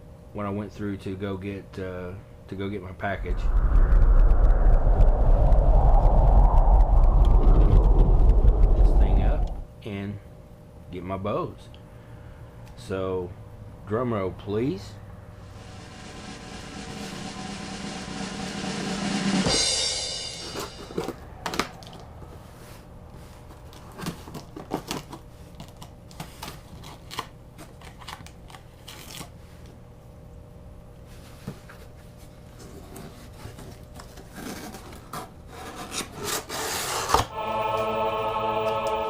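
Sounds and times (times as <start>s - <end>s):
music: 15.6s - 21.1s, 37.3s - 39.0s
packaging tearing: 24.3s - 29.4s.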